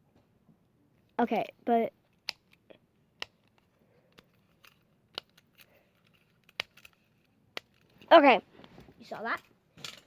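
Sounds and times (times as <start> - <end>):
fidget toy plastic clicks: 1.4 - 8.0.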